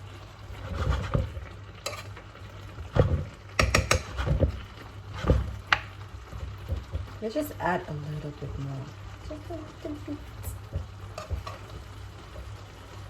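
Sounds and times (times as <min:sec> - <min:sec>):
faint sizzle: 0:00.0 - 0:13.0
spoon knocking and scraping a pot: 0:00.6 - 0:02.2, 0:02.8 - 0:07.2, 0:10.6 - 0:12.5.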